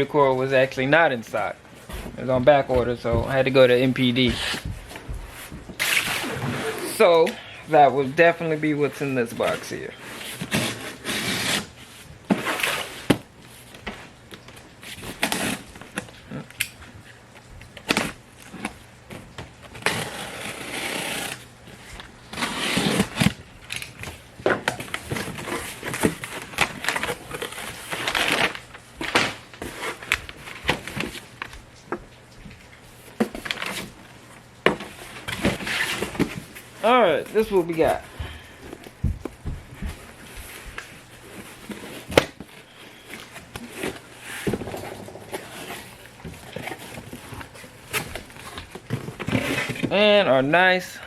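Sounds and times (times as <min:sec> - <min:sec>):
packing material rustling: 0:17.2 - 0:50.3.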